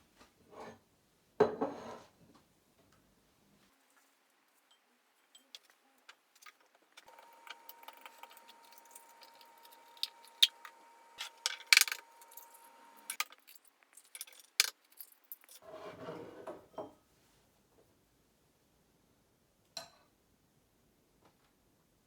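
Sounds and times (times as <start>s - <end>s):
utensils clinking against a bowl: 6.4s - 15.6s.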